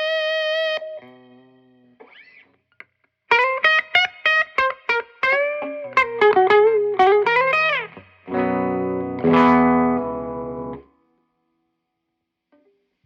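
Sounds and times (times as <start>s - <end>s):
electric guitar playing: 0.0s - 2.5s, 3.3s - 11.0s.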